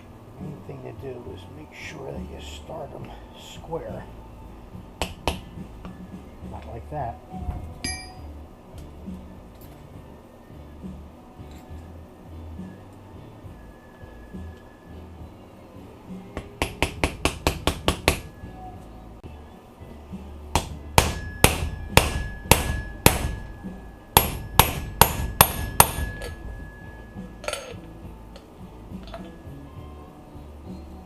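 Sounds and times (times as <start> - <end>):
hammer tapping on metal: 5.0 - 5.5, 7.8 - 8.3, 16.4 - 18.3, 20.6 - 26.8
faint metallic ring: 7.8 - 8.3, 21.2 - 30.2.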